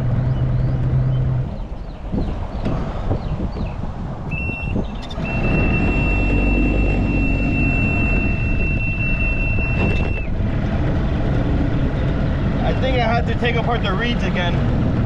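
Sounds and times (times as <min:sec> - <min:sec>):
high-pitched warning horn: 0:04.6 - 0:10.2.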